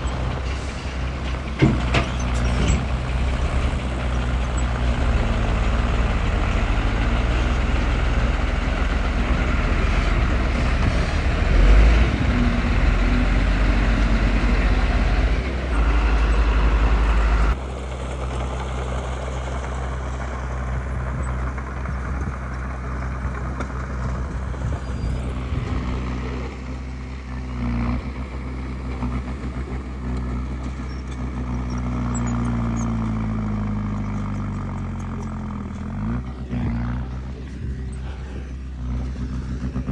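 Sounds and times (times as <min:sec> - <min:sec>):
heavy machinery diesel engines: 0:00.0 - 0:39.9.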